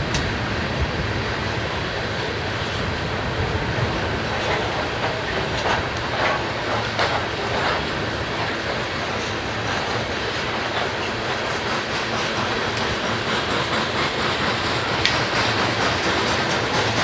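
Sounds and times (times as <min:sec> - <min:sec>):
steel wheels rolling on rail: 0:00.0 - 0:17.0
sharp clacks: 0:04.3 - 0:17.0.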